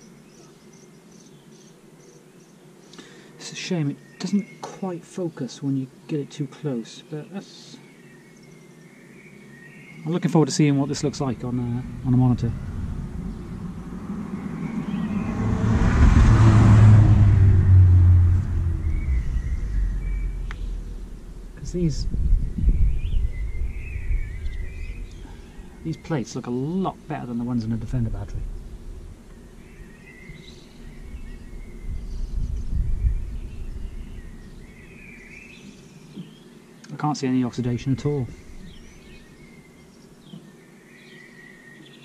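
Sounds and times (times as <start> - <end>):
faint birds chirping: 0.0 - 42.0
low rumbling noise: 10.6 - 35.5, 37.6 - 39.7
vehicle passing by: 10.9 - 35.1.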